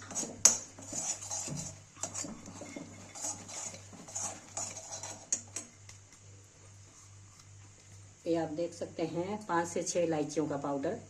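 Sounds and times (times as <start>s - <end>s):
spoon clinking and scraping a dish: 0.0s - 5.8s.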